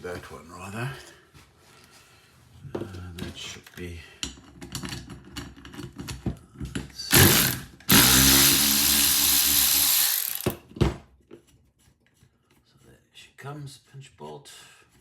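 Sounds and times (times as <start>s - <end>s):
power drill motor running: 7.1s - 10.6s.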